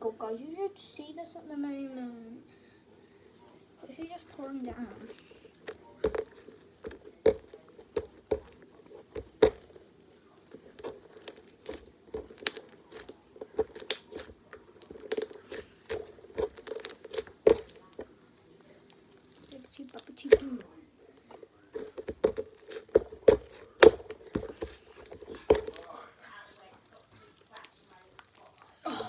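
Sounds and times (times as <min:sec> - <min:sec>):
slime squishing with wet pops: 0:03.9 - 0:29.0.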